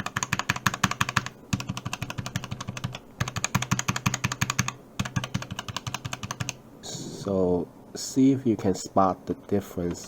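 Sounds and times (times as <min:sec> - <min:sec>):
mechanical keyboard keys clicking: 0:00.0 - 0:06.6.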